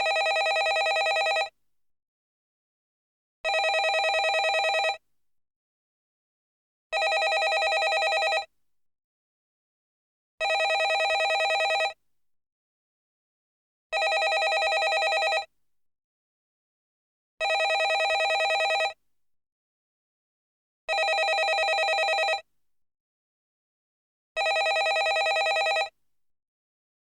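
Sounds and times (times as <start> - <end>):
landline telephone ringing: 0.0 - 1.5, 3.5 - 5.0, 7.0 - 8.5, 10.4 - 12.0, 14.0 - 15.5, 17.4 - 19.0, 20.9 - 22.4, 24.4 - 25.9.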